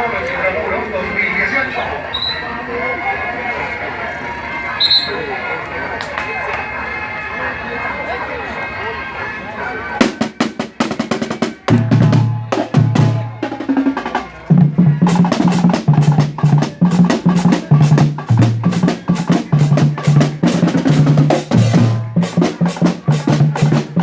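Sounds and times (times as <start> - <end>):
rapid snare drumming: 10.0 - 24.0
deep bass drum beats: 11.0 - 24.0.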